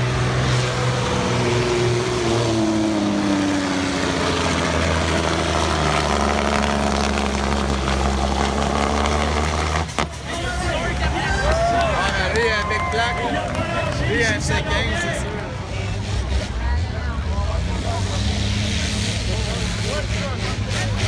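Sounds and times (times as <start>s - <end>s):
tractor engine at full throttle: 0.0s - 21.0s.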